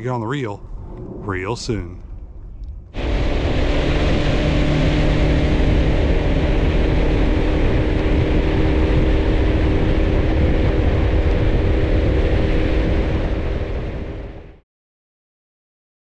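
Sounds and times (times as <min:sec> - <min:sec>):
boat motor running: 0:02.9 - 0:14.6
rush of wind and water: 0:02.9 - 0:14.6.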